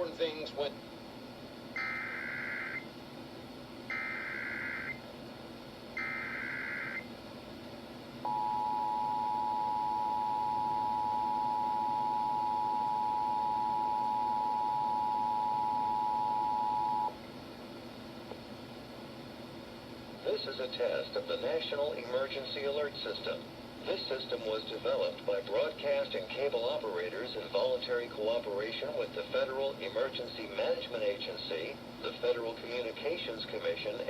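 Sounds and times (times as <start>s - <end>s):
digital data header bursts: 1.8s - 2.8s, 3.9s - 5.0s, 6.0s - 7.0s
two-tone attention signal: 6.0s - 7.0s, 8.3s - 17.2s.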